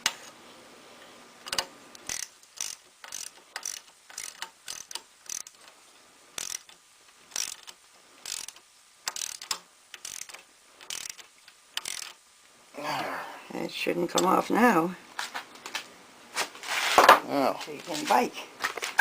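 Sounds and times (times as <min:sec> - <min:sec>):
ratchet wrench clicking: 0:01.5 - 0:05.6, 0:06.4 - 0:12.2.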